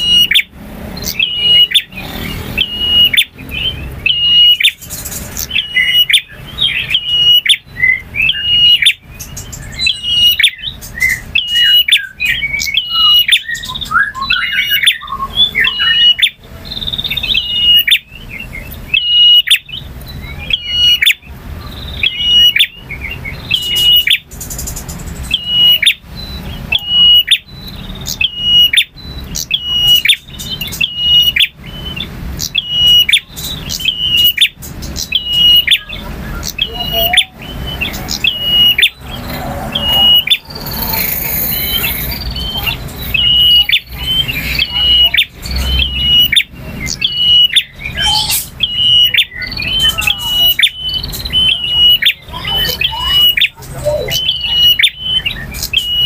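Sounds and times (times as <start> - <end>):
bird warbling: 0.0 - 56.0
bird singing high note: 25.3 - 56.0.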